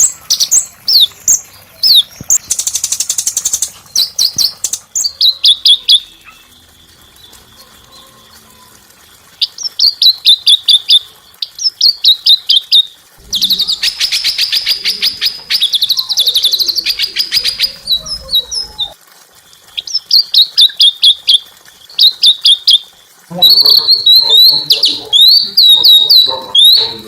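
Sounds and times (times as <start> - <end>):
songbird singing high notes: 9.4 - 19.0, 23.4 - 27.0.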